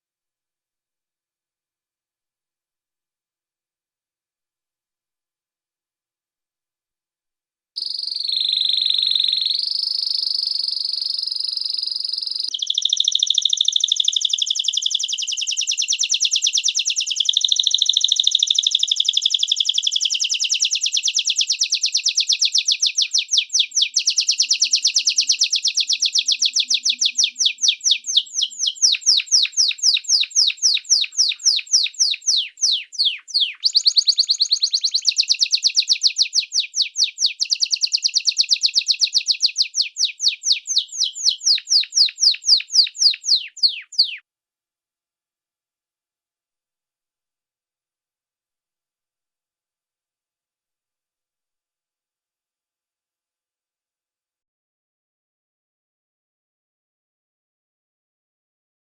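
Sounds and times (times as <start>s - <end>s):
canary singing: 7.8s - 44.2s.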